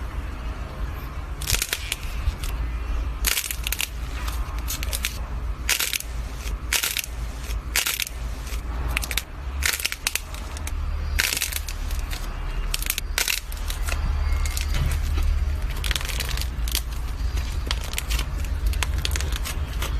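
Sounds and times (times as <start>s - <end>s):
slime crackling and popping: 1.4s - 19.9s.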